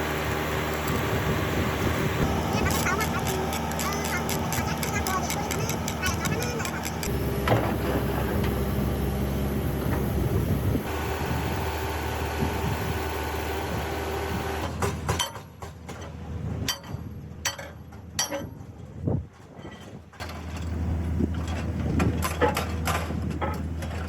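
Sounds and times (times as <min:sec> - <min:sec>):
heavy machinery droning: 0:00.0 - 0:14.8.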